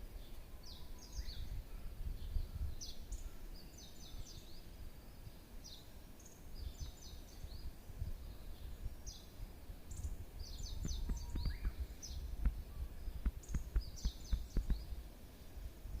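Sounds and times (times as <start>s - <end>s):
songbird singing: 0.0s - 16.0s
sharp clicks: 13.2s - 14.8s.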